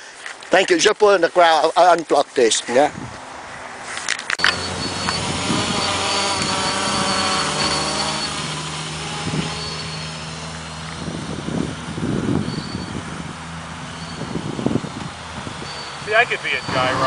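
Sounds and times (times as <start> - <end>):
quadcopter propellers buzzing: 4.4 - 17.0.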